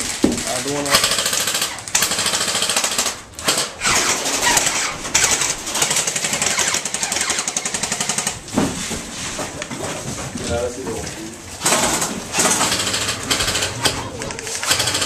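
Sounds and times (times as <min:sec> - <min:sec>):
airsoft rifle automatic fire: 0:00.8 - 0:08.4, 0:11.6 - 0:15.0.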